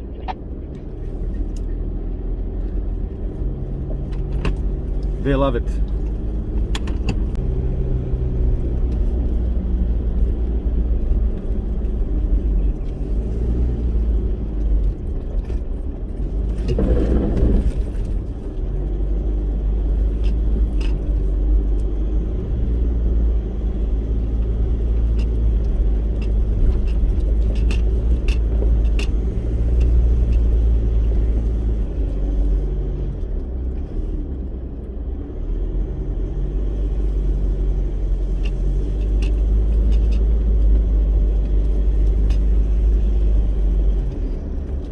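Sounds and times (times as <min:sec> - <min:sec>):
vehicle engine and road rumble: 0:00.0 - 0:44.9
rattles and knocks: 0:16.4 - 0:18.4.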